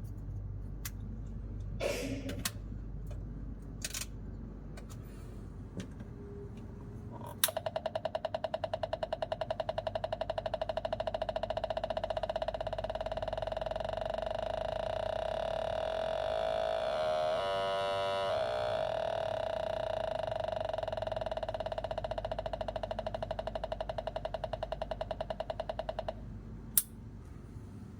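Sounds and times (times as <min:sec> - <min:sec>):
pulsing buzzy electronic tone: 0:12.9 - 0:25.7.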